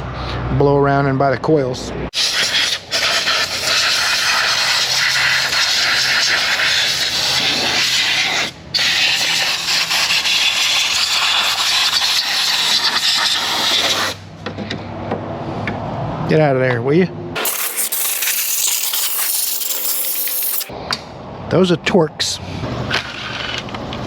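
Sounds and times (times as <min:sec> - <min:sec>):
compressed air blow gun hissing: 0:02.2 - 0:14.2, 0:17.4 - 0:20.7.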